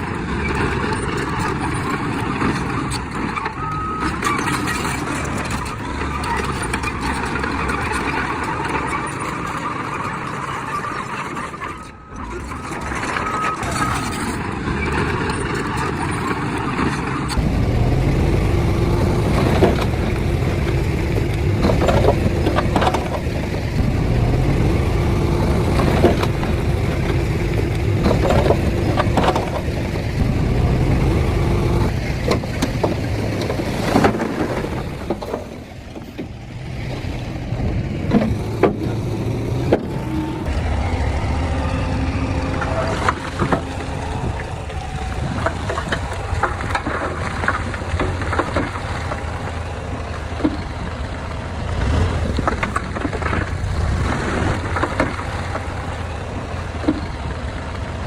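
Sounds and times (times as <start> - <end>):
knocks and clanks: 0.0 - 57.8
heavy diesel machinery running: 0.0 - 58.0
deep engine drone with hum: 17.2 - 35.6, 36.3 - 57.8.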